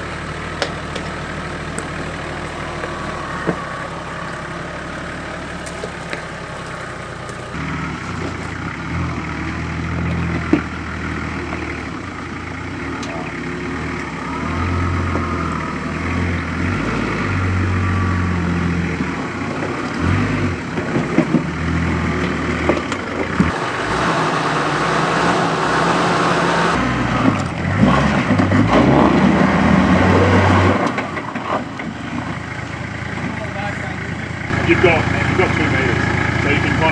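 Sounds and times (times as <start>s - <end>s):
tyres scraping on rock: 0.0s - 7.6s, 23.5s - 26.8s
off-road vehicle engine crawling: 0.0s - 36.9s.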